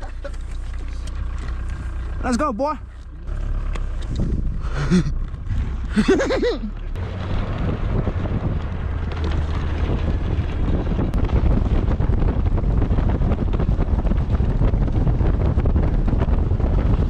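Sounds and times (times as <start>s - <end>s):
wind buffeting microphone: 3.9s - 6.2s, 7.0s - 17.0s.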